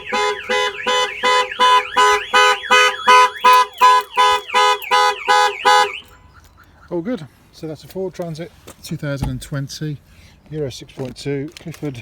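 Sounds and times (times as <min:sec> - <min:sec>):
van horn honking: 0:00.0 - 0:06.2
car alarm siren sweeping: 0:00.0 - 0:06.7.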